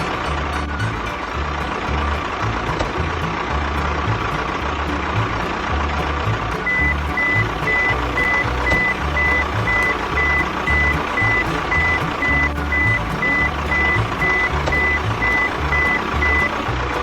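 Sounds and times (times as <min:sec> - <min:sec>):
reversing alarm beeping: 0:06.6 - 0:16.7.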